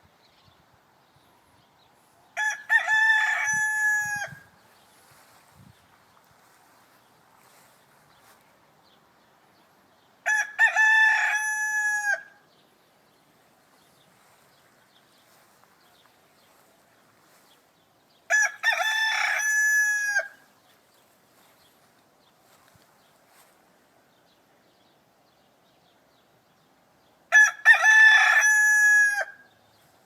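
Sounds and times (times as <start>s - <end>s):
rooster crowing: 2.4s - 4.5s, 10.2s - 12.4s, 18.3s - 20.5s, 27.3s - 29.5s.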